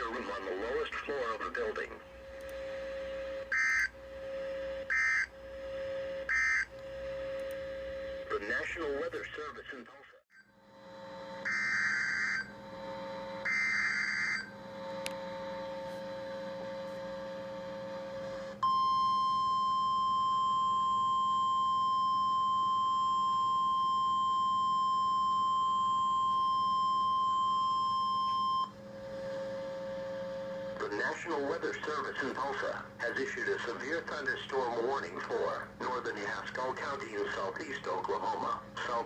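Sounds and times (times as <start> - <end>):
radio hiss: 0.0 - 2.2, 8.3 - 10.1, 30.8 - 39.0
steady alarm tone: 0.0 - 9.7, 10.4 - 39.0.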